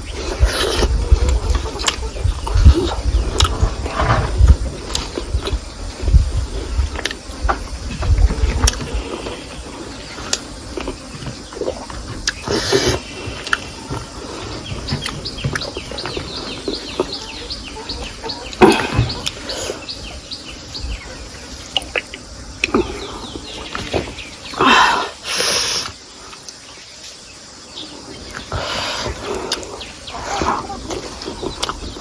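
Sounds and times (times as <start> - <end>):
small birds chirping: 0.0 - 32.0.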